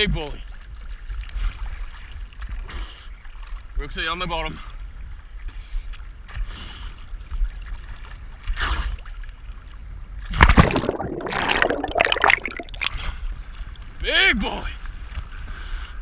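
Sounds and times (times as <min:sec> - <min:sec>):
sea water splashing: 0:10.3 - 0:13.7.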